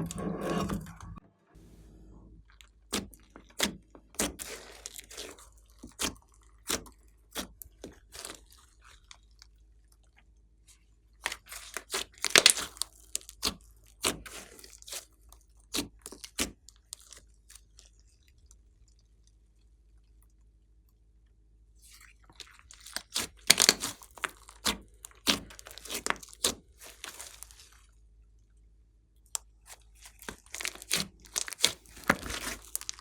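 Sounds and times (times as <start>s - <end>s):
slime squeezed with wet pops: 11.3s - 15.1s, 22.8s - 27.7s, 29.7s - 33.0s.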